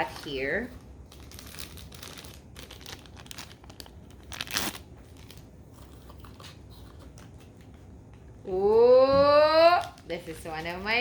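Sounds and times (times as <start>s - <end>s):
cardboard packaging tearing and crinkling: 1.1s - 6.6s.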